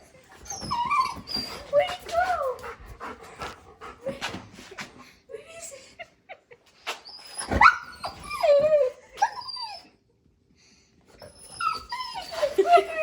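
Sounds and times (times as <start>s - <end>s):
dog whining: 0.4s - 2.2s, 7.0s - 10.0s, 11.2s - 13.0s.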